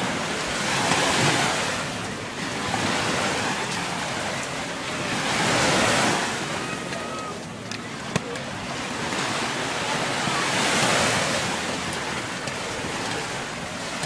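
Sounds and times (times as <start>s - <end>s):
small waves breaking on beach: 0.0s - 14.0s.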